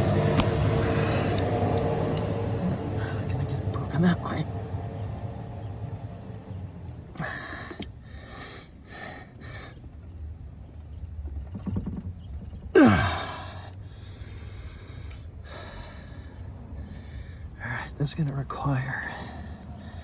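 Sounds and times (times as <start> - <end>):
man breathing hard: 0.6 - 1.8, 7.2 - 10.0, 12.8 - 17.6, 19.0 - 20.0
loud grunt: 12.8 - 13.7.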